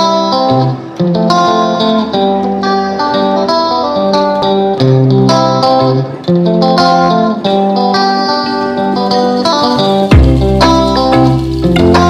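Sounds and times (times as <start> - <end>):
plucked guitar music: 0.0 - 12.0
bass line: 10.1 - 12.0.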